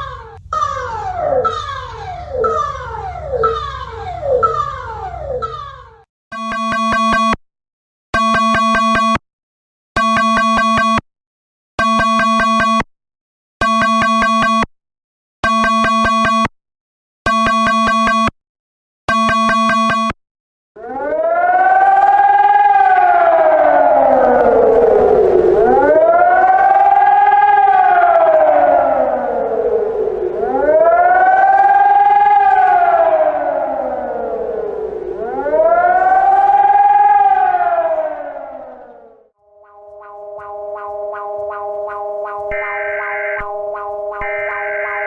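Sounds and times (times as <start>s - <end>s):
wailing siren: 0.0s - 7.4s, 20.8s - 45.0s
buzzy alarm tone pulses: 39.4s - 45.0s.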